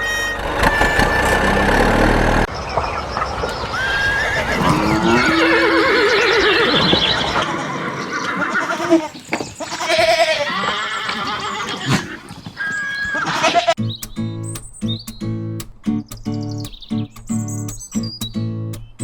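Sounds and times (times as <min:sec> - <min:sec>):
farm animal calls: 0:03.4 - 0:15.3
horse whinnying: 0:03.8 - 0:13.8
sharp click: 0:13.8 - 0:19.0.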